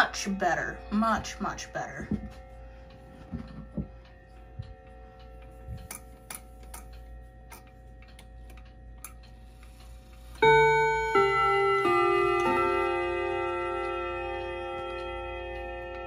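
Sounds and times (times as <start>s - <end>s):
clock chime note ringing: 0.0s - 16.0s
faint ringing of chime rods: 0.0s - 16.0s
wall clock ticking: 0.0s - 16.0s.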